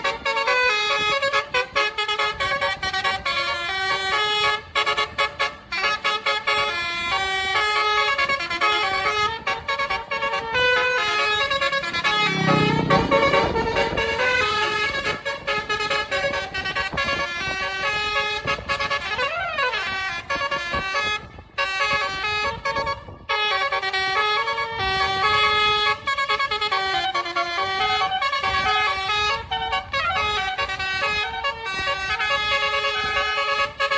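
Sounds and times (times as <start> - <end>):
bus horn playing melody: 0.0 - 33.9
deep horn blast: 10.2 - 17.6
rising and falling pitch sweep: 11.3 - 14.9.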